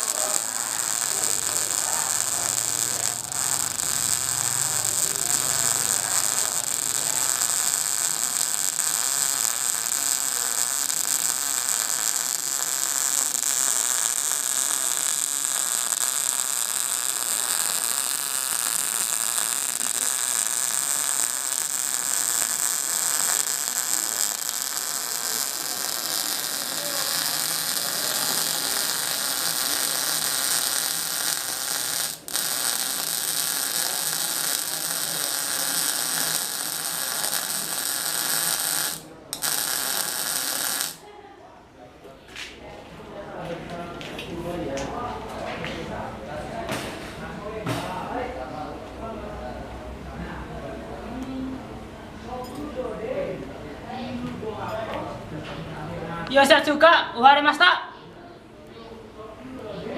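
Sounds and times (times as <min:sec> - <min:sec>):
welding arc crackling hiss: 0:00.0 - 0:41.0.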